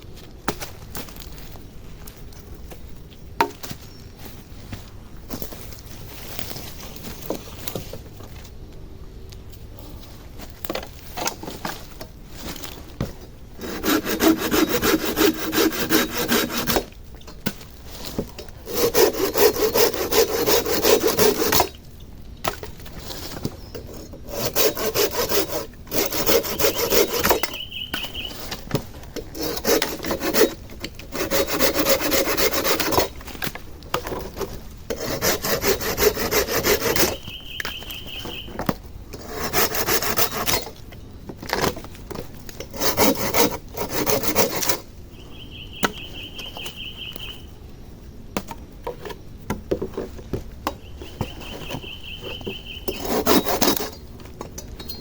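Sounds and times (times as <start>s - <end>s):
hand saw cutting wood: 13.6s - 17.0s, 18.6s - 21.8s, 23.8s - 28.6s, 29.2s - 33.2s, 34.0s - 37.4s, 39.2s - 40.8s, 42.6s - 44.9s, 52.3s - 54.0s.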